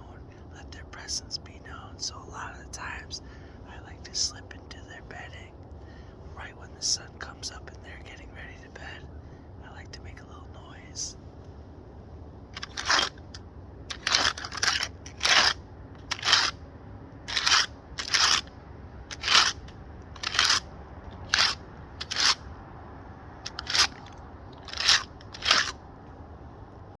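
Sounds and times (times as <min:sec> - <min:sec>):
bark scraping: 0:12.6 - 0:13.3, 0:13.9 - 0:16.6, 0:17.3 - 0:18.5, 0:19.1 - 0:19.6, 0:20.2 - 0:22.4, 0:23.4 - 0:25.8.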